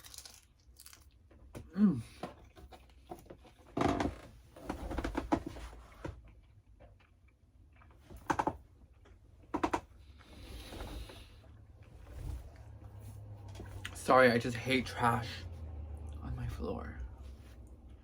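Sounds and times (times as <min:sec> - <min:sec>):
crunching while eating pizza: 0:00.0 - 0:03.7.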